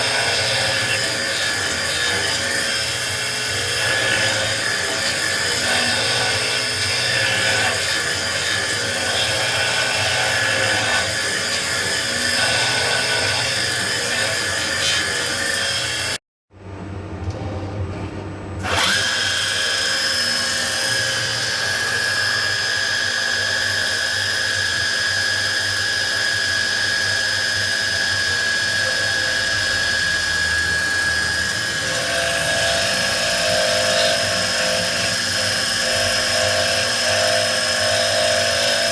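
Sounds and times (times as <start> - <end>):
high-pitched spindle whine: 0.0 - 16.2, 18.6 - 38.9.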